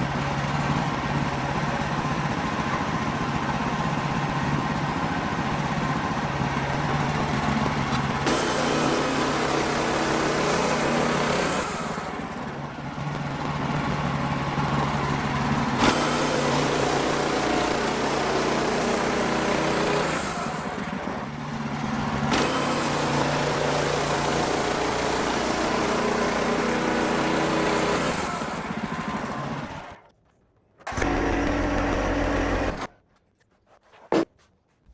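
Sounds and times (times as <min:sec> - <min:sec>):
sawmill band blade cutting log: 0:07.2 - 0:12.4, 0:15.7 - 0:20.9, 0:22.2 - 0:29.8, 0:30.9 - 0:32.9.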